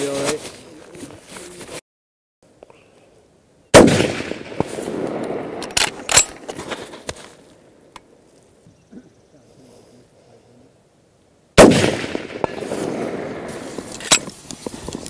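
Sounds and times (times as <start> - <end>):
rifle shot: 3.7 - 6.5, 11.6 - 14.2.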